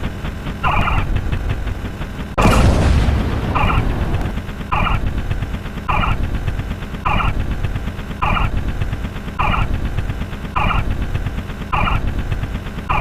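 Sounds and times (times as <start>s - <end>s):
loud synthetic bang: 2.4s - 4.4s
low rumble: 2.4s - 4.6s.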